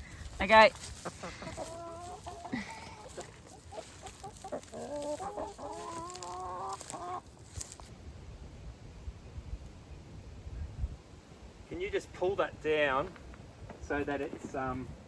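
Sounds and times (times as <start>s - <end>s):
chickens clucking: 0.0s - 7.6s.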